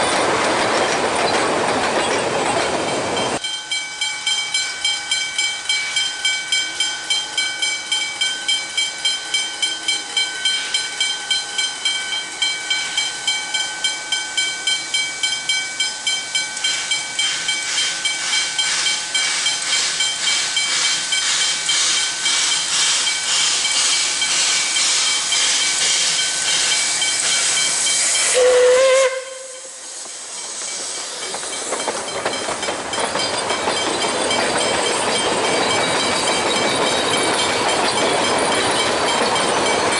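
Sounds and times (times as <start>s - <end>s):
steam locomotive exhaust beats: 0.0s - 39.9s
steam hissing: 16.6s - 39.9s.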